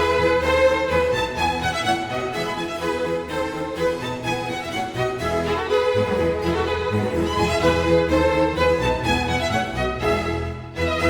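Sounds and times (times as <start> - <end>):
violin and strings music: 0.0 - 11.0.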